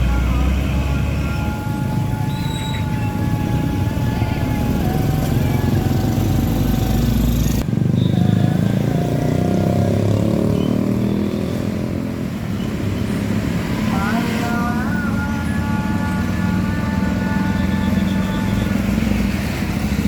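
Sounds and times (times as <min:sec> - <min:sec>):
truck diesel engine running: 0:00.0 - 0:07.6
road traffic: 0:00.0 - 0:20.0
engine accelerating: 0:02.4 - 0:07.7.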